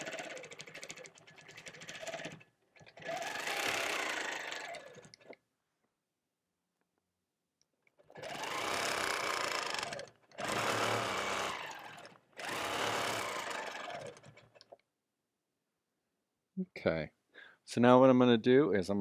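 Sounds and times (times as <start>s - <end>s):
quilting machine stitching: 0.0s - 5.4s, 8.0s - 14.7s.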